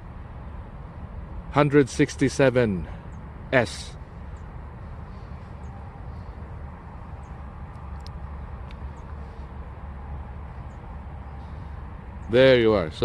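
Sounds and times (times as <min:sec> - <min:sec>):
low outdoor rumble: 0:00.0 - 0:13.0
faint clicks: 0:07.2 - 0:09.2.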